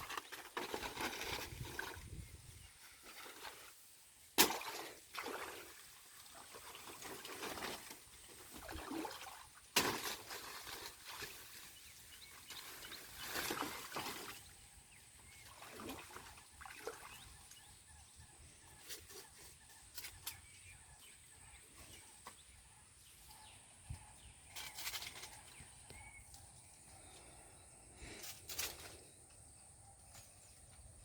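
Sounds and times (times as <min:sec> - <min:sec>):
water sloshing and trickling: 0:04.4 - 0:11.8, 0:12.4 - 0:17.6.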